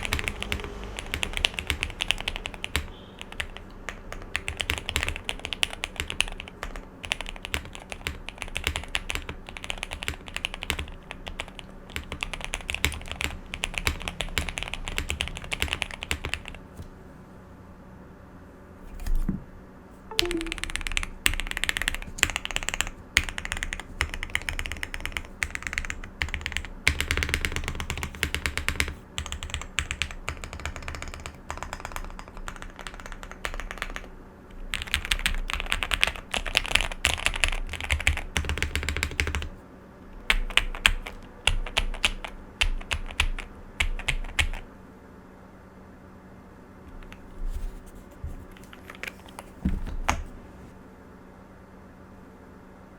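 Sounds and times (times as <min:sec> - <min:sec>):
mechanical keyboard typing: 0:00.0 - 0:16.6, 0:20.1 - 0:39.5, 0:40.3 - 0:44.6, 0:48.6 - 0:50.3.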